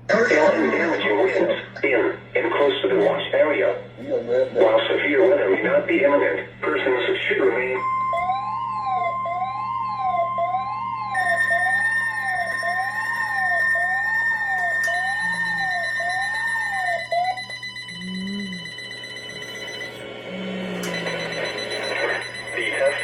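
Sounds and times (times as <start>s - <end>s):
higher steady alarm tone: 4.6s - 23.0s
steady high alarm tone: 6.9s - 23.0s
alarm tone sweeping up and down: 7.8s - 23.0s.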